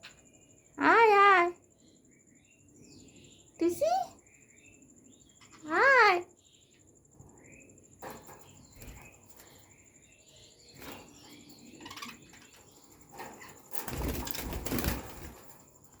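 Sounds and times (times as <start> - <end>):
bird chirping: 0.0 - 16.0
bird rustling: 11.9 - 16.0
wings flapping: 13.1 - 16.0.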